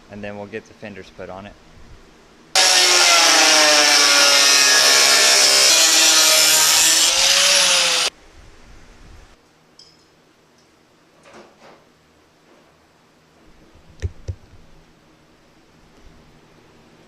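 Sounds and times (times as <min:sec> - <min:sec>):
power tool grinding: 0:02.6 - 0:08.1.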